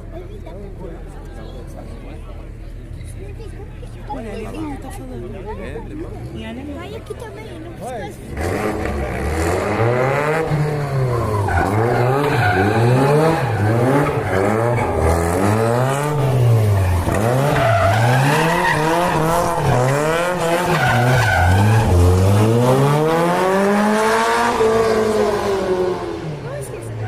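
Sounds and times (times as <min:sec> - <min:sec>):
car engine revving: 0:05.9 - 0:27.0.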